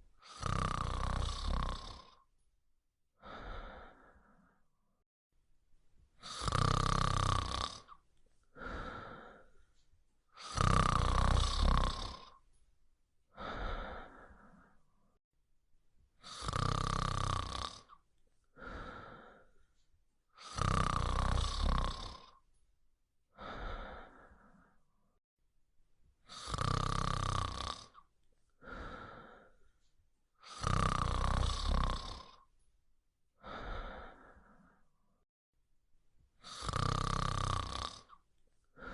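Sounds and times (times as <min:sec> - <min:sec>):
dog snoring: 0:00.2 - 0:02.3, 0:06.2 - 0:08.0, 0:10.4 - 0:12.4, 0:16.2 - 0:18.0, 0:20.4 - 0:22.4, 0:26.3 - 0:29.3, 0:30.4 - 0:32.5, 0:36.4 - 0:38.2.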